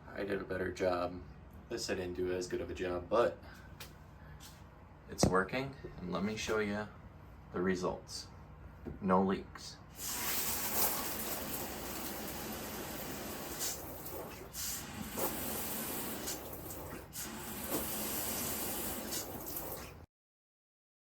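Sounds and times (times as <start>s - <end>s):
shower spraying water: 10.0s - 20.1s.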